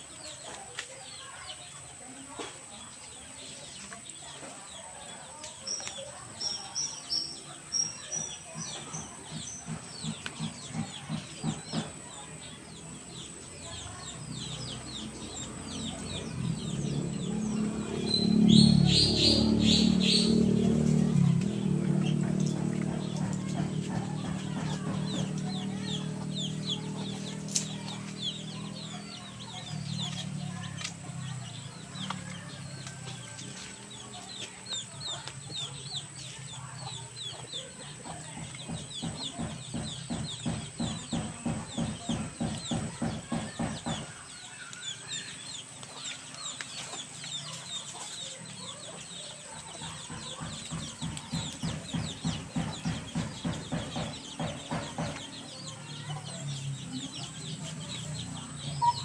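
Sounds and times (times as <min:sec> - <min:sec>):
chicken clucking: 0:45.3 - 0:59.0.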